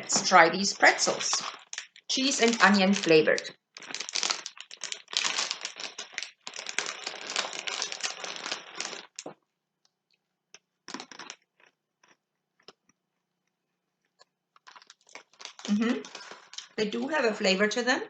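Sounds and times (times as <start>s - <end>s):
plastic snack packet crinkling: 0.1s - 13.0s, 14.0s - 17.2s
pretzel sticks crunching: 0.9s - 9.3s, 10.9s - 12.8s, 14.6s - 16.8s.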